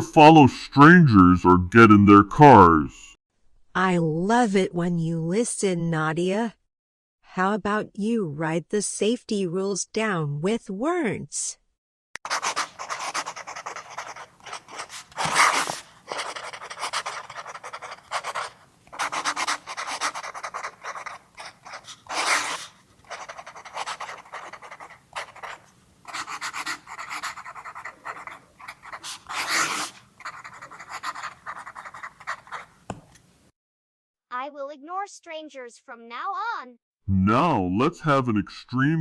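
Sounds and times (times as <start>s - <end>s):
pen scratching on paper: 12.2s - 33.0s.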